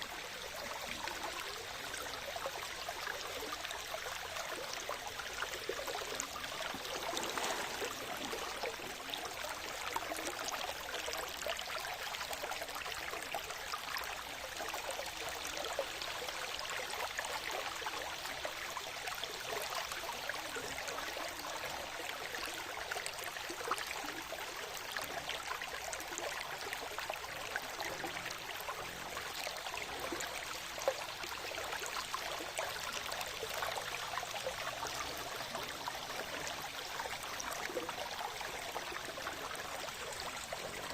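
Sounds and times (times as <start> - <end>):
stream trickling: 0.0 - 40.9
water splashes: 4.5 - 10.9.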